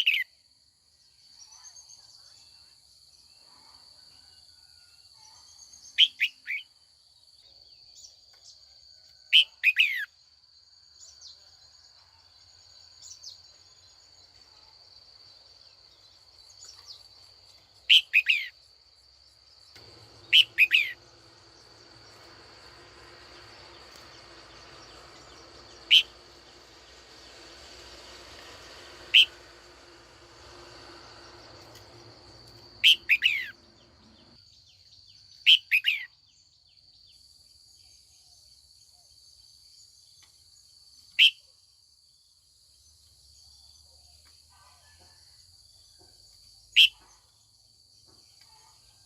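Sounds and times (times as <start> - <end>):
bird whistled calls: 20.3 - 21.0, 25.8 - 26.2, 29.1 - 29.4, 32.8 - 33.5.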